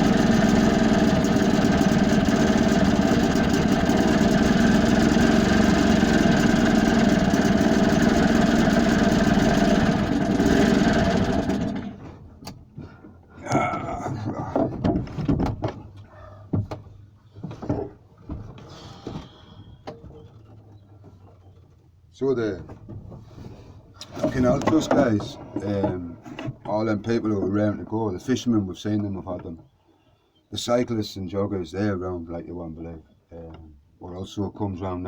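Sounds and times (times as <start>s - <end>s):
boat engine idling: 0.0s - 12.2s
knocks and clatters: 14.2s - 18.7s.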